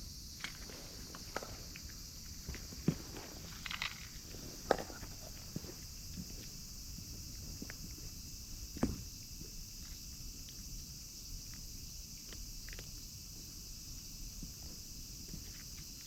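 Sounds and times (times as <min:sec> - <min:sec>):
thump: 0:08.8 - 0:09.1.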